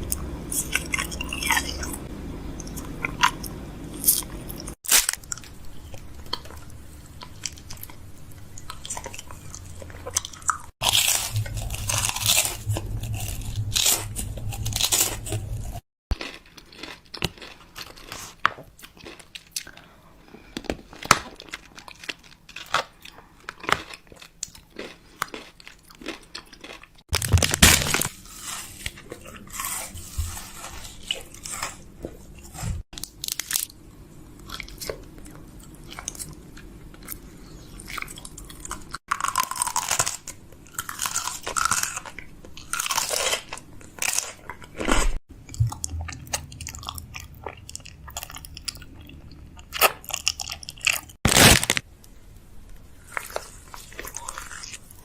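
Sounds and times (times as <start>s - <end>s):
packaging crinkling and rustling: 27.1s - 31.6s, 50.9s - 51.9s.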